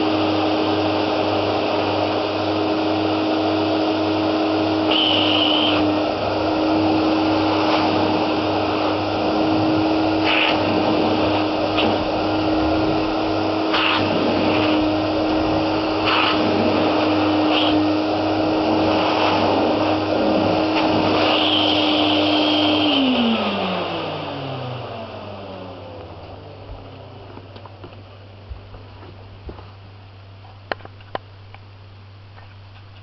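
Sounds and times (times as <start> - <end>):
vacuum motor humming: 0.0 - 29.7
hissy surges: 4.7 - 24.3.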